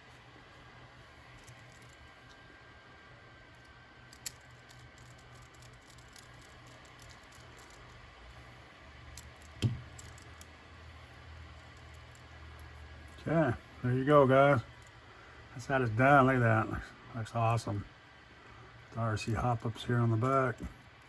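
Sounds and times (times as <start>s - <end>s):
faint steady hum: 0.0s - 21.0s
sharp click of small parts: 4.1s - 8.0s.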